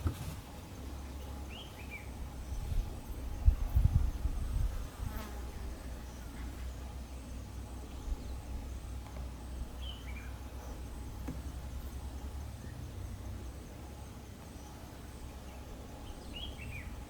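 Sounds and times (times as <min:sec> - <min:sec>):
faint insect whine: 0:00.1 - 0:17.0
bird chirp: 0:01.0 - 0:04.3, 0:09.5 - 0:10.4, 0:14.5 - 0:17.0.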